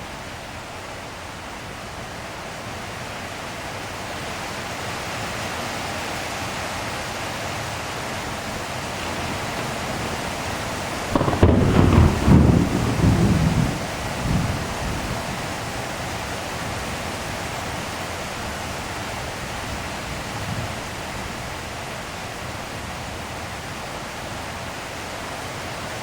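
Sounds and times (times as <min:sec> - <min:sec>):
steady rain falling: 0:00.0 - 0:26.0
thunder crack and rumble: 0:09.0 - 0:15.8.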